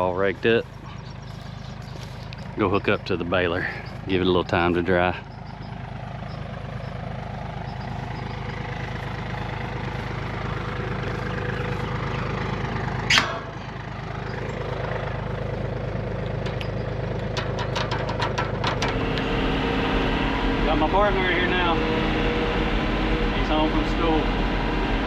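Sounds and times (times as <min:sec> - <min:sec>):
tractor diesel engine running: 0:00.0 - 0:25.0
loud sharp bang: 0:13.1 - 0:13.7.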